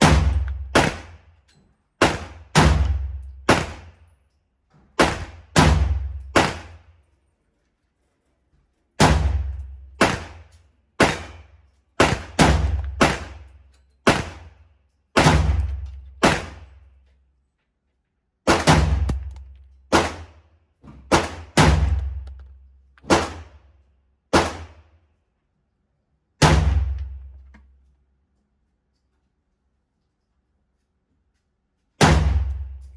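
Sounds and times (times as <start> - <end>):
pistol gunshots: 0.0 - 1.2, 2.0 - 4.0, 5.0 - 6.8, 9.0 - 10.4, 11.0 - 11.4, 12.0 - 13.5, 14.1 - 14.5, 15.2 - 16.7, 18.5 - 20.3, 21.1 - 22.3, 23.1 - 23.5, 24.3 - 24.8.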